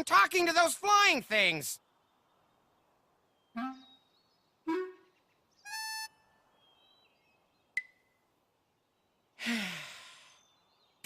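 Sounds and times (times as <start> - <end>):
short cartoon pitched tones: 3.6 - 3.9, 4.7 - 5.1.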